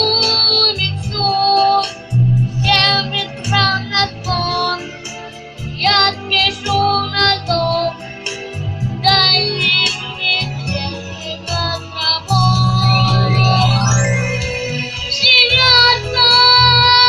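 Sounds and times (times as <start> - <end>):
pulsing bass line: 2.1 - 3.8, 12.3 - 15.0
instrumental melody: 8.6 - 15.4.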